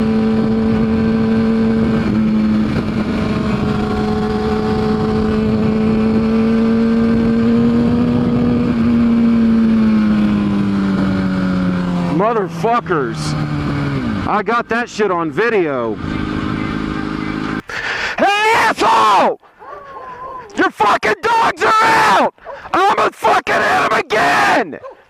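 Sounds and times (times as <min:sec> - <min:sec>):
wind rushing over microphone: 0:00.0 - 0:12.1
motorcycle engine running: 0:00.0 - 0:17.9.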